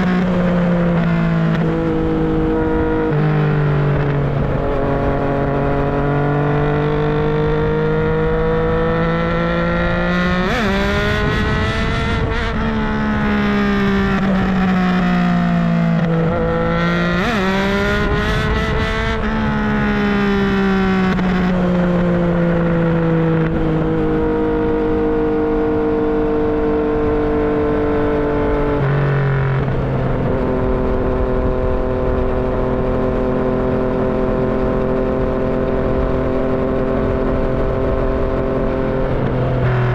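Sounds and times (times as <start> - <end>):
motorcycle engine and exhaust: 0.0 - 39.9.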